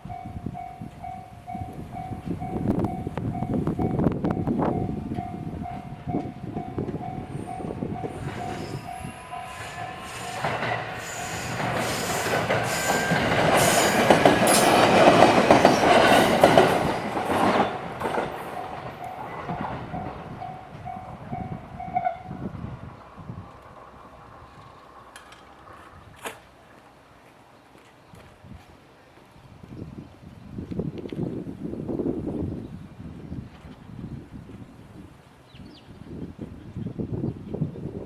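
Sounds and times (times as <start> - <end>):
level-crossing alarm dings: 0.1 - 16.0
train wheels and rail clatter: 0.5 - 29.3.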